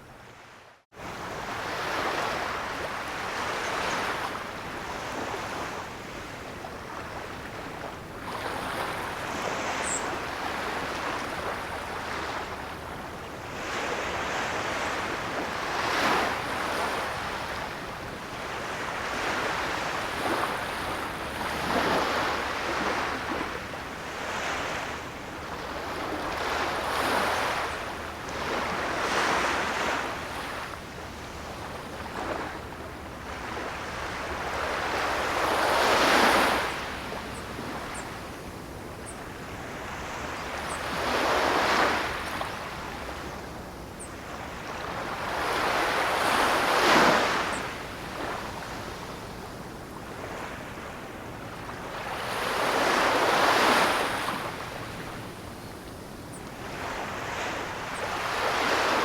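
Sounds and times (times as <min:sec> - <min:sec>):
ocean waves breaking: 0:18.4 - 0:38.0, 0:39.4 - 0:43.4, 0:44.3 - 0:48.9, 0:56.6 - 0:59.0.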